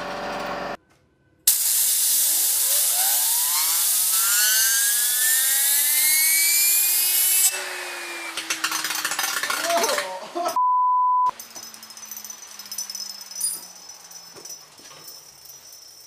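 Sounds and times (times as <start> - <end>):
fidget spinner whining: 2.3 - 10.2.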